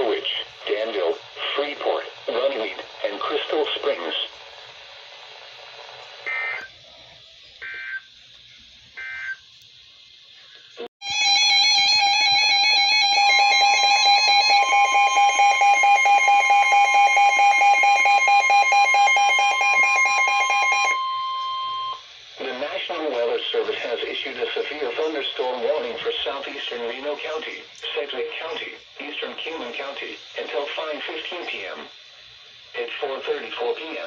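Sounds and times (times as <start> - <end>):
pulsing electronic alarm: 9.0 - 9.4, 11.0 - 22.1
steady single-pitch tone: 11.0 - 22.0
screeching digital data tones: 11.1 - 22.0.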